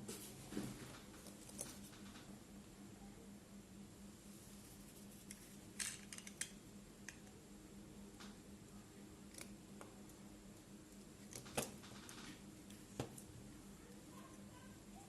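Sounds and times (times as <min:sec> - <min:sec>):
faint steady hum: 0:00.0 - 0:15.0.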